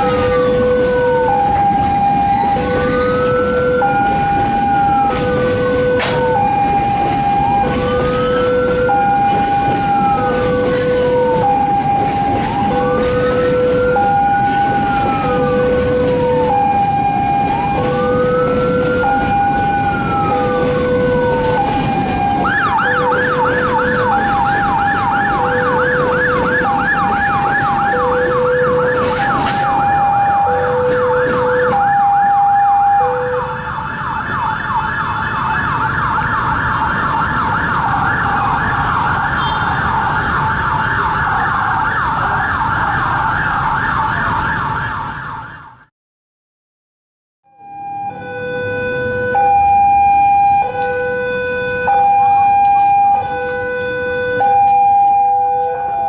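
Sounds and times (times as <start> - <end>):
electronic siren wailing and yelping: 0.0 - 39.2, 47.5 - 56.0.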